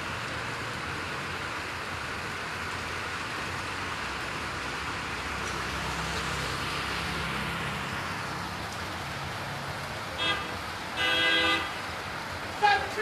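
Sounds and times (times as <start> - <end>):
steady rain: 0.0 - 13.0
vehicle passing: 3.6 - 12.5
vehicle horn toots: 10.2 - 11.8.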